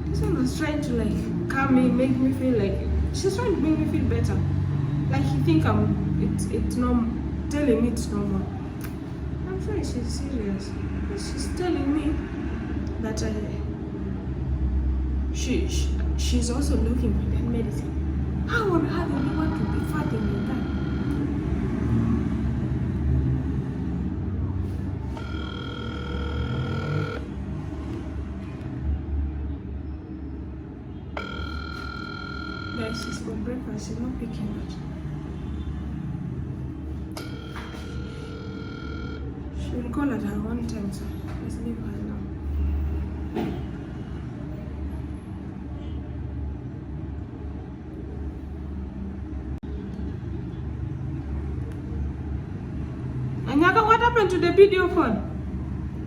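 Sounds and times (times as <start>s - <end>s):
phone ringing tone: 18.5s - 21.4s, 25.1s - 27.4s, 31.2s - 33.4s, 37.2s - 39.4s.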